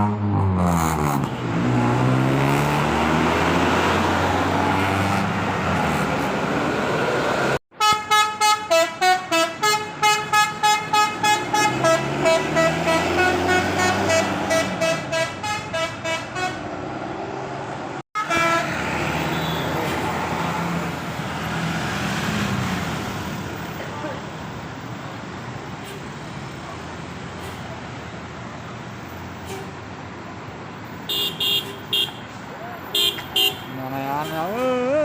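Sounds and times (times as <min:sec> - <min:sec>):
vehicle noise: 0:00.0 - 0:35.0
multi-tone musical bus horn: 0:07.7 - 0:16.7, 0:18.2 - 0:20.1, 0:31.1 - 0:32.3, 0:32.9 - 0:34.7.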